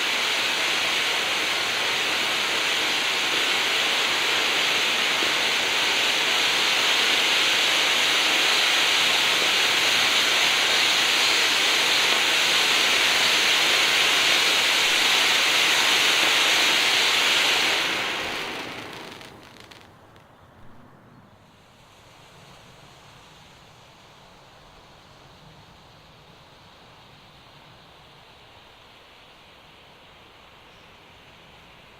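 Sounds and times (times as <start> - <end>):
firework fountain hissing sparks: 0.0 - 20.4.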